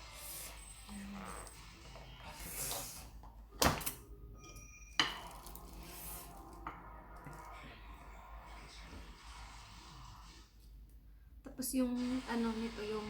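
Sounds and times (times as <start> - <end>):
utensils clattering against dishes: 3.6 - 7.4.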